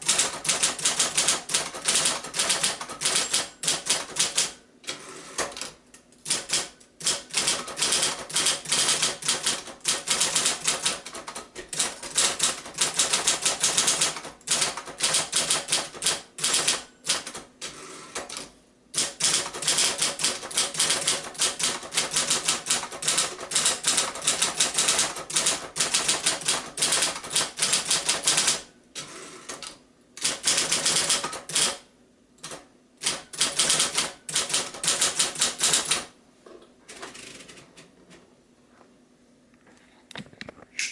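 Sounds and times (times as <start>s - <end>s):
electric typewriter typing: 0.0s - 36.2s, 36.9s - 37.8s.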